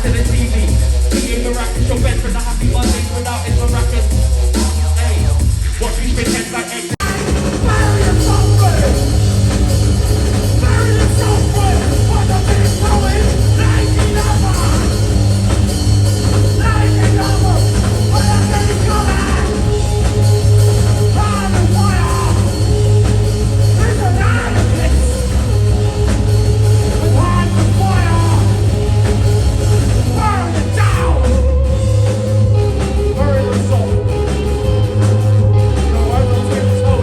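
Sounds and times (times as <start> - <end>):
heavy bass line: 0.0 - 37.0
live rock band: 0.0 - 37.0
person singing: 5.8 - 9.4, 10.3 - 28.8, 30.1 - 37.0.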